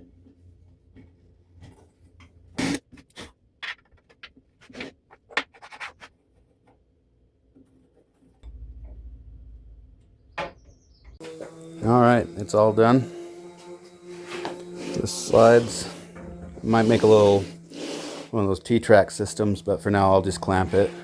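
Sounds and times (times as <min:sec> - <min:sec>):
low steady hum: 0:08.4 - 0:21.0
tools knocking and scraping: 0:13.0 - 0:18.3.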